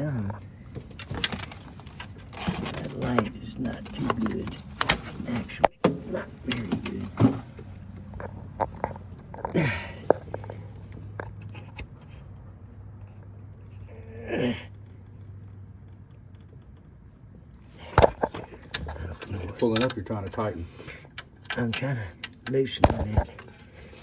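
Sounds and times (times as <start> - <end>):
wrench clinking on metal: 0.8 - 5.3, 17.8 - 24.0.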